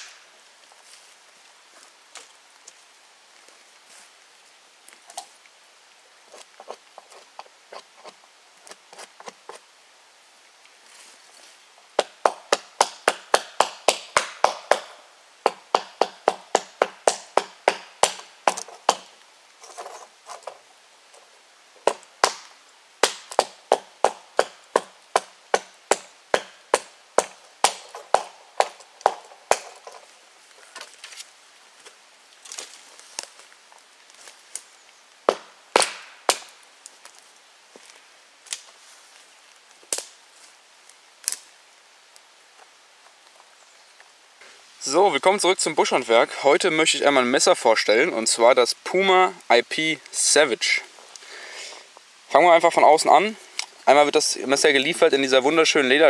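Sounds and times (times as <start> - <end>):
blade chopping into wood: 15.5 - 19.1, 21.9 - 29.8, 35.3 - 36.5.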